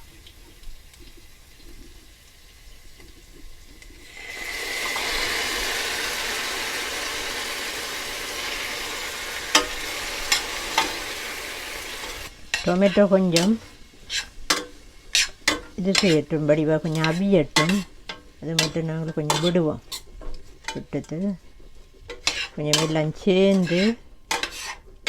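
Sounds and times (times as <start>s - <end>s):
tomatoes sizzling in a pan: 0.0s - 25.0s
utensil clicking against pan: 13.4s - 16.2s, 16.8s - 21.2s, 22.1s - 24.8s.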